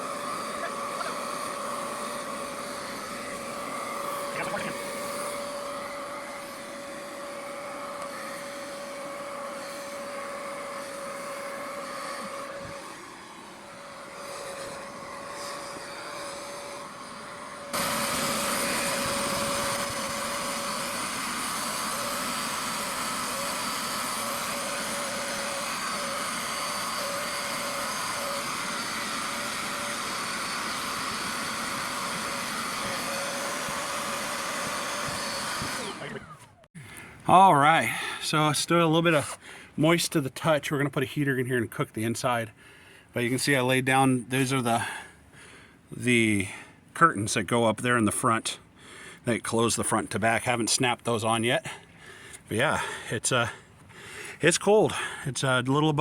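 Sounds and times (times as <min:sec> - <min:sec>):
carpet cleaner vacuum motor whine: 0:00.0 - 0:37.7.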